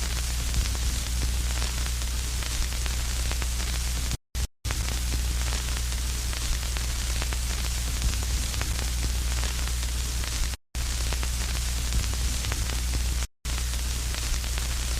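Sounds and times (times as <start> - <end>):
static hiss: 0.0 - 14.9.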